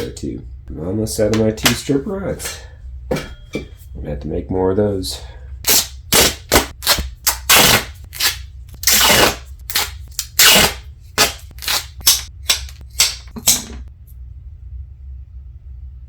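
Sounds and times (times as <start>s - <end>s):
steady low hum: 0.0s - 16.0s
duct tape ripping: 5.7s - 13.6s.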